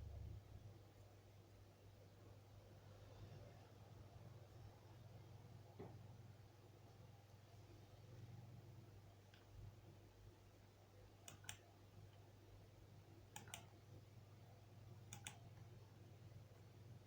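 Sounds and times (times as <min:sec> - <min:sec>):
low steady hum: 0:00.0 - 0:17.0
faint double clicks: 0:13.3 - 0:13.7, 0:15.1 - 0:15.4.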